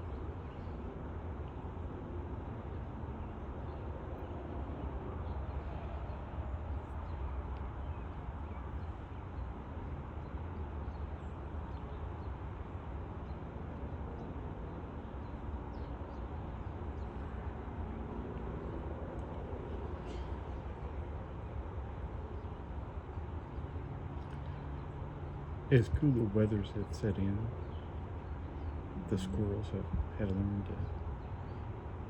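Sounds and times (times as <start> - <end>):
small birds chirping: 2.6 - 17.7, 22.2 - 31.9
low outdoor rumble: 14.7 - 32.0.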